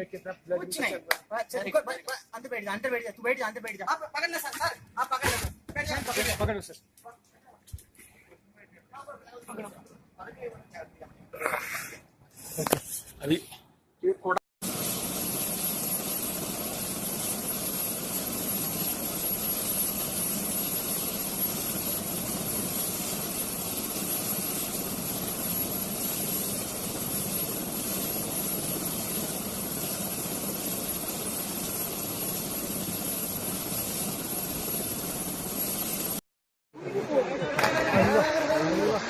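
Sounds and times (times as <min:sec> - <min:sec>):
helicopter rotor and engine: 0:14.6 - 0:36.2.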